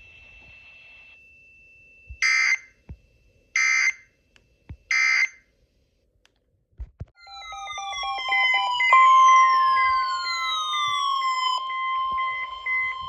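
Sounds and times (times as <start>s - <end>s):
descending sliding alert tones: 7.2s - 13.0s.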